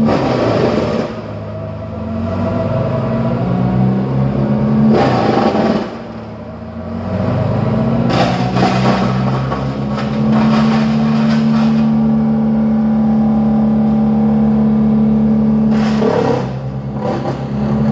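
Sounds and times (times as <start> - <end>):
chainsaw revving: 0.0 - 1.4, 4.9 - 6.4, 15.6 - 17.9.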